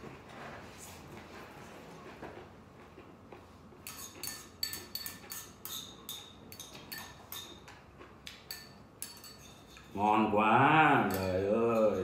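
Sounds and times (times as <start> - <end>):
utensils clinking against bowl: 3.8 - 10.0, 10.8 - 12.0.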